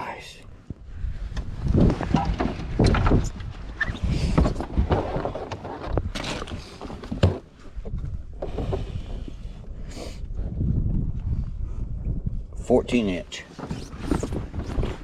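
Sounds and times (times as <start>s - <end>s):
low rumble of wind and water: 0.0s - 15.0s
knocks and clunks of handling gear: 1.3s - 8.9s.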